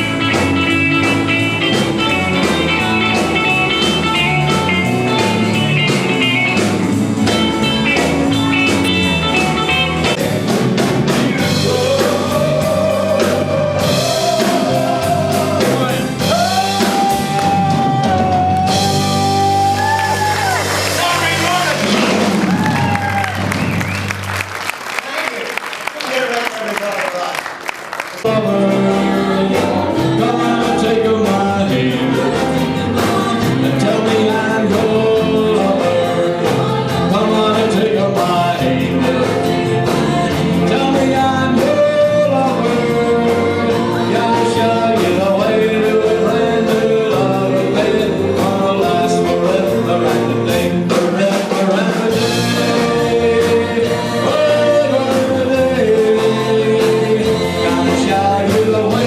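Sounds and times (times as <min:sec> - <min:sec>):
rock and roll band: 0:00.0 - 0:59.0
person singing: 0:11.3 - 0:22.2, 0:28.2 - 0:59.0.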